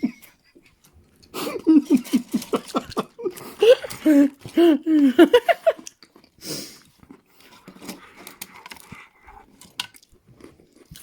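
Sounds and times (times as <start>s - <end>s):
person chewing: 5.6s - 11.0s
breathy puff: 6.4s - 6.8s.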